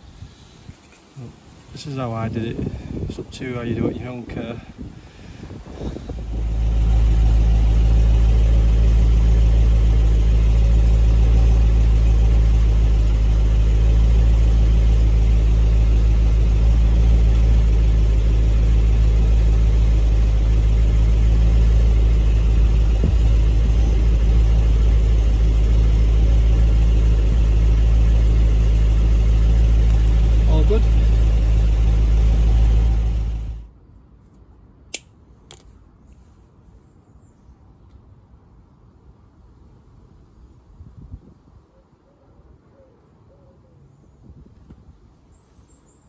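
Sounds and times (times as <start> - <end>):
engine idling: 1.0 - 33.7.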